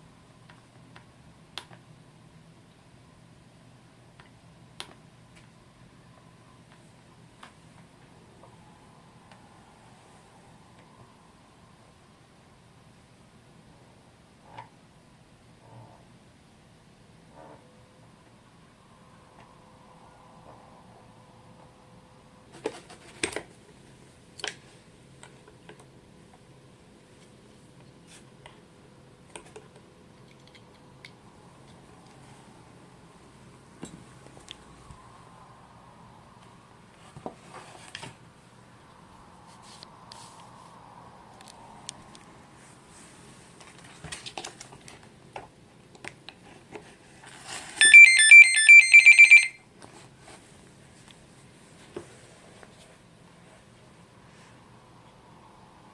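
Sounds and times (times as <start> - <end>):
faint steady hum: 0.0 - 55.9
faint clicks and handling: 29.3 - 32.2
electronic beeping tones: 47.8 - 49.6.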